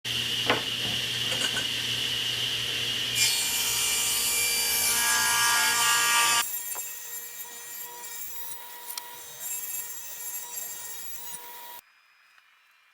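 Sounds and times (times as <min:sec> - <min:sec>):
saw cutting wood: 0:03.1 - 0:11.8.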